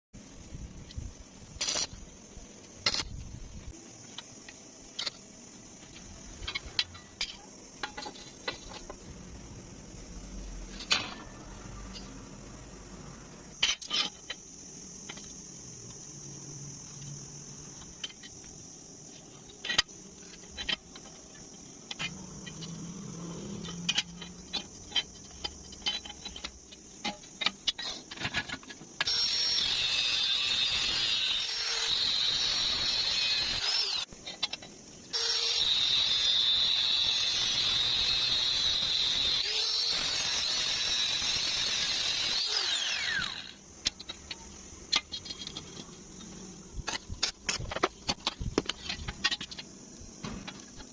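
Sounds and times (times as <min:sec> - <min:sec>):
angle grinder whining on steel: 0:29.0 - 0:34.1, 0:35.1 - 0:43.6.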